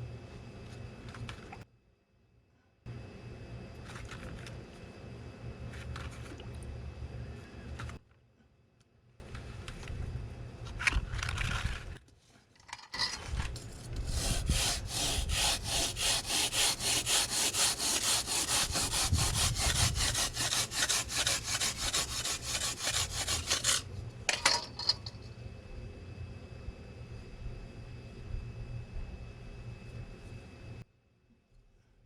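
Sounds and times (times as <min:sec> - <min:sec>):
hand saw cutting brick: 0:14.0 - 0:23.9.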